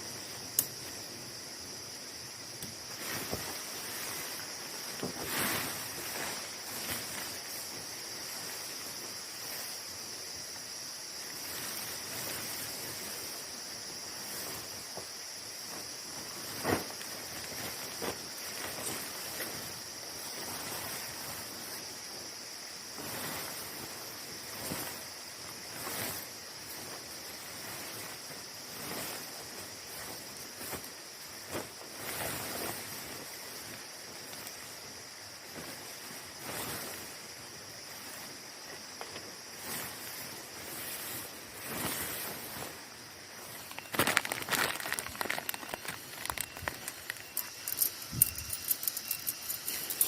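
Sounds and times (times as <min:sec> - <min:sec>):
night insects chorus: 0:00.0 - 0:50.0
campfire crackling: 0:43.3 - 0:50.0.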